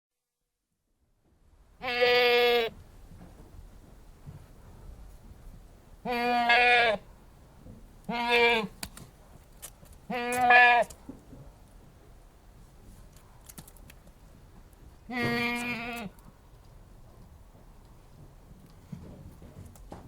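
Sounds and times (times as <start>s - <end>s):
goat bleating: 1.8s - 2.7s, 6.0s - 7.0s, 8.1s - 8.7s, 10.1s - 10.9s, 15.1s - 16.2s.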